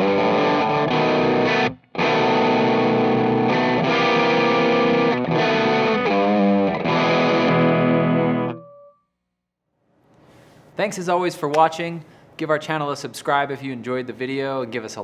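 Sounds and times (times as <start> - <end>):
fuzz-distorted electric guitar chords: 0.0 - 8.6.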